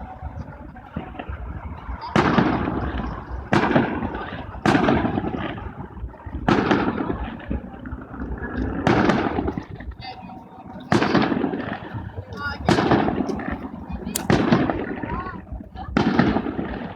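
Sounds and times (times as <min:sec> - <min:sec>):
firework shells bursting: 0:14.1 - 0:14.6.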